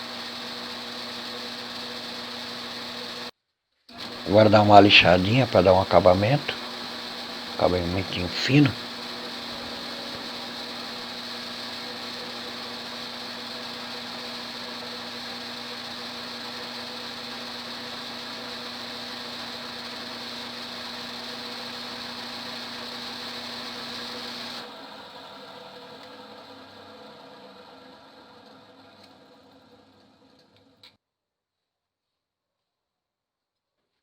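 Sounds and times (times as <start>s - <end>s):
electric motor humming: 0.0s - 3.3s, 4.0s - 27.1s
faint hum: 4.0s - 29.1s.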